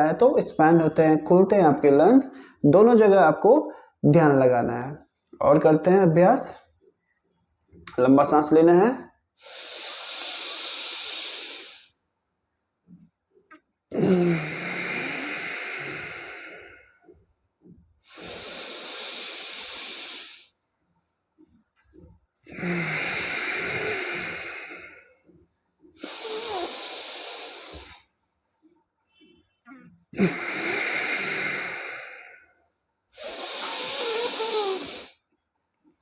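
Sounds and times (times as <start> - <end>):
person breathing forcefully through nose: 9.4 - 12.0, 14.0 - 17.1, 18.0 - 20.6, 22.5 - 28.1, 30.2 - 32.5, 33.1 - 35.2.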